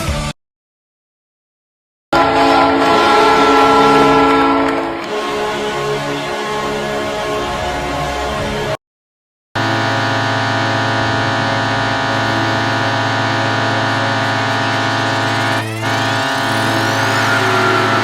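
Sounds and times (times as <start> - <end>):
music: 0.0 - 0.4, 15.2 - 18.0
deep goal horn blast: 2.1 - 8.8, 9.6 - 18.0.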